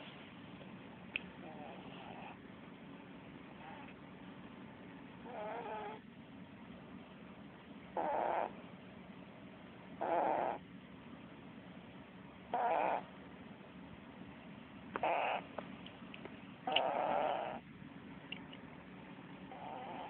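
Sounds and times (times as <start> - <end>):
steady low hum: 0.0 - 20.0
cat snoring: 1.4 - 2.4, 3.6 - 4.0, 5.2 - 6.0, 8.0 - 8.6, 10.0 - 10.6, 12.5 - 13.1, 15.0 - 15.5, 16.7 - 17.6, 19.5 - 20.0.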